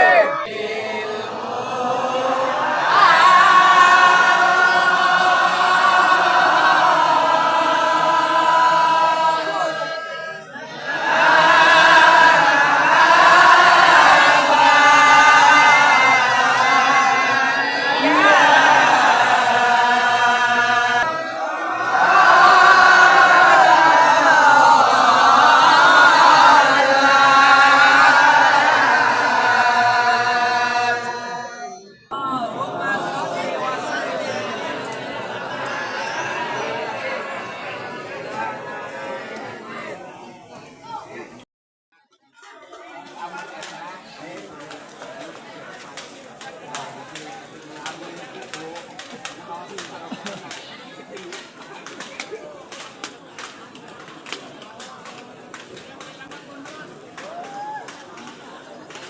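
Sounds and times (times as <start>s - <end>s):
group chanting: 0.0s - 40.2s.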